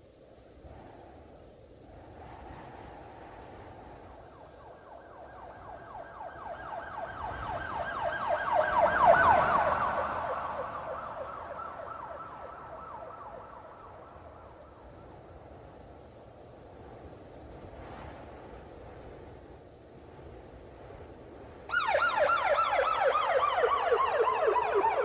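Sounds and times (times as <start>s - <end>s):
police siren yelping: 5.5s - 14.0s, 21.7s - 25.0s.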